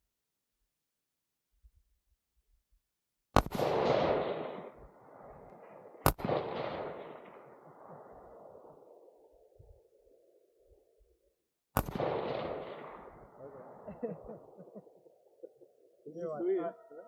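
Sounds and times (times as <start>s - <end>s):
gunshots with rolling echo: 3.4s - 11.2s, 11.8s - 16.9s.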